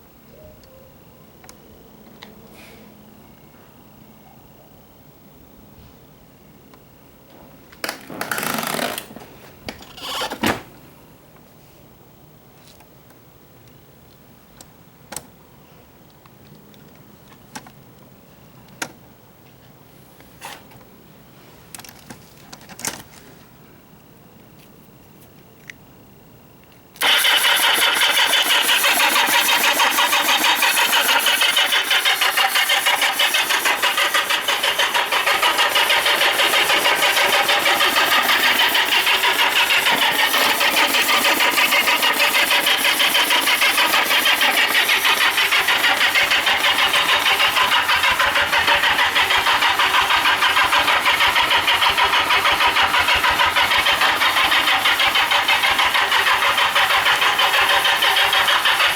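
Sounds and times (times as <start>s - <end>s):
starter motor cranking engine: 7.9s - 10.8s, 27.0s - 58.9s
starter click: 27.0s - 58.9s.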